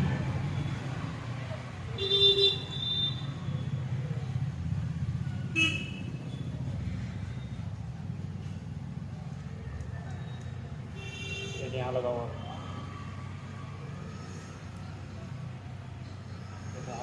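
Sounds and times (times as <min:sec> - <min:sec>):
low hum of running engines: 0:00.0 - 0:17.0.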